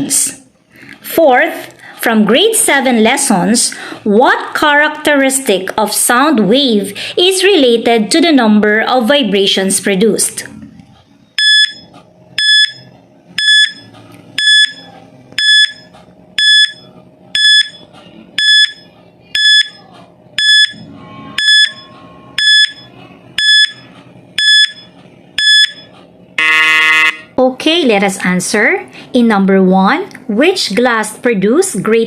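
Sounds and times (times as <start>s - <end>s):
buzzer tone: 11.4s - 12.8s, 13.4s - 17.8s, 18.4s - 19.8s, 20.4s - 27.3s
countdown timer beeping: 11.4s - 19.8s, 20.4s - 27.3s.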